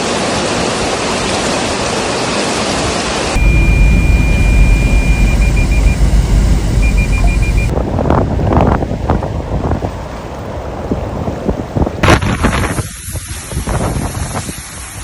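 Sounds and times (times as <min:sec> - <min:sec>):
steady rushing noise: 0:03.2 - 0:08.7
high electronic tone and beeps: 0:03.4 - 0:07.7.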